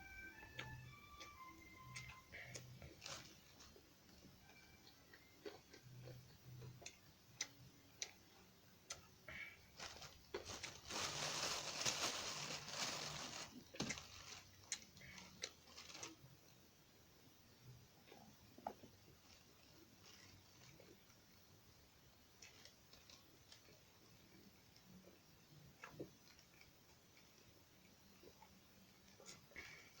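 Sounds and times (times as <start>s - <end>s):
person chewing: 5.1s - 8.2s.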